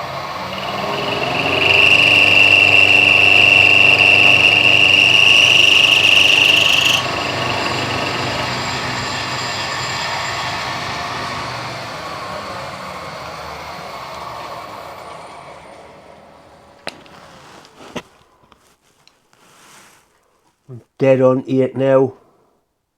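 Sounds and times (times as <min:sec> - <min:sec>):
milling machine high whine: 0:00.0 - 0:16.4.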